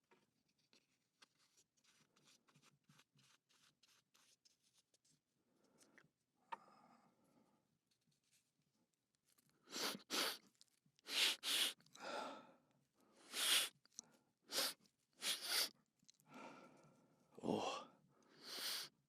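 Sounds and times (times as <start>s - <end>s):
person sniffing hard: 9.7s - 10.4s, 11.1s - 12.2s, 13.2s - 13.7s, 14.5s - 15.7s, 18.4s - 18.9s.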